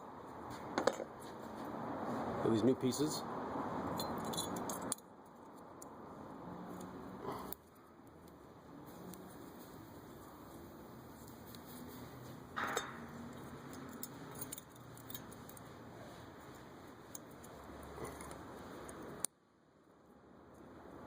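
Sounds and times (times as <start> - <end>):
small metal parts clinking: 3.9 - 5.7, 12.6 - 15.7.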